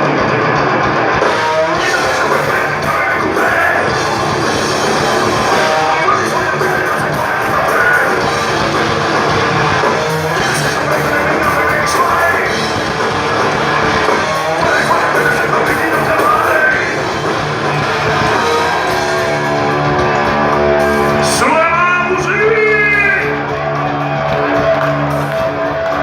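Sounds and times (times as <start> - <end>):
rock band playing live: 0.0 - 26.0
person singing: 1.4 - 19.2.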